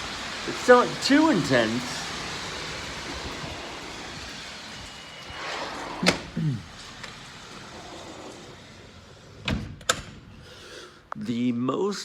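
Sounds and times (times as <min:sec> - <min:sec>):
steady rainfall: 0:00.0 - 0:09.3.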